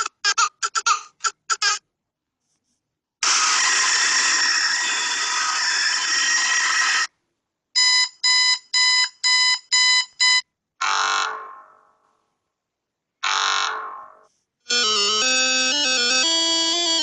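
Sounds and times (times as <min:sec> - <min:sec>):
short electronic beeps: 0:07.8 - 0:10.4
phone ringing: 0:14.7 - 0:17.0.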